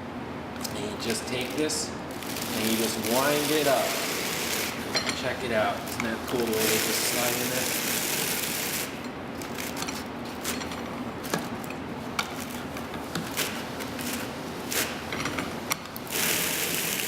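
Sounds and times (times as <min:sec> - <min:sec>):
sandpaper scraping and rustling: 0:02.4 - 0:04.8.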